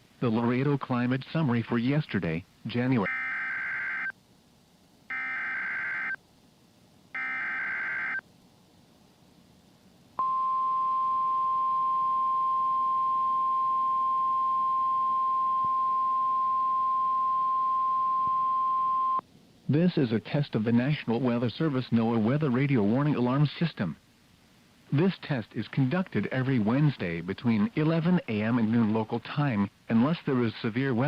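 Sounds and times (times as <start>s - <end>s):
buzzing digital data tones: 3.0s - 4.1s, 5.1s - 6.2s, 7.2s - 8.2s
steady warning alarm tone: 3.0s - 4.1s, 5.1s - 6.2s, 7.2s - 8.2s.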